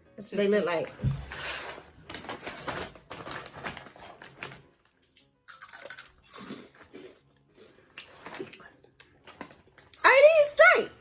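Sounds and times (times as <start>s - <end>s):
chips crunching: 2.2s - 7.2s.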